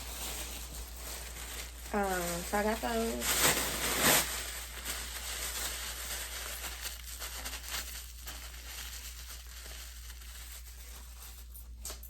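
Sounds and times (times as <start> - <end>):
rustling and crinkling items: 0.0 - 12.0.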